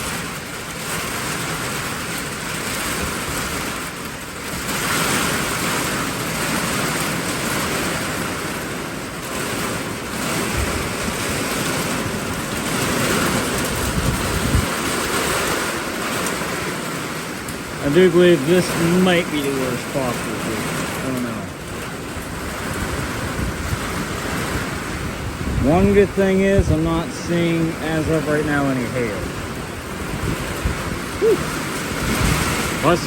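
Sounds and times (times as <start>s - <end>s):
wind buffeting microphone: 0.0s - 17.8s, 19.5s - 33.0s
heavy rain pouring: 0.0s - 33.0s
strong wind gusts: 0.0s - 33.0s.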